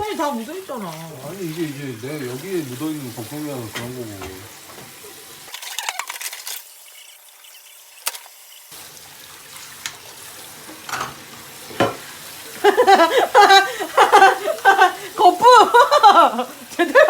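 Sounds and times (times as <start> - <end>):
water running from tap: 0.0 - 17.0
dishes clattering: 2.2 - 6.2, 9.8 - 17.0
dishes clinking: 3.1 - 6.0, 10.6 - 16.3.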